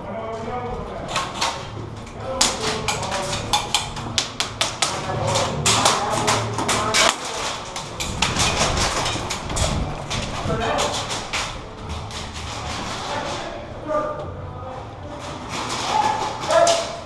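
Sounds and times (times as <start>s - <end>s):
sharp taps and clicks: 2.4s - 10.2s.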